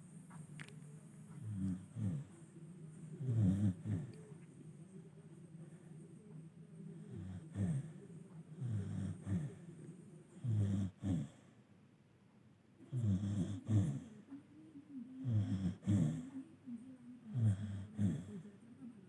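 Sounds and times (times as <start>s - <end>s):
dog snoring: 1.2s - 4.4s, 6.9s - 11.5s, 12.8s - 14.2s, 15.2s - 16.4s, 17.3s - 18.5s.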